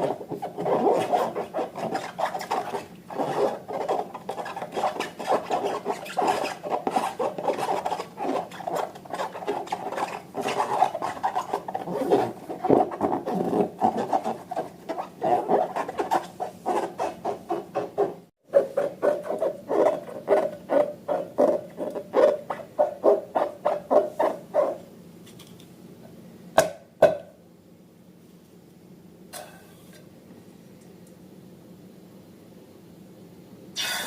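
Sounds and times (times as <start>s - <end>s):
slime being stirred: 0.0s - 24.8s.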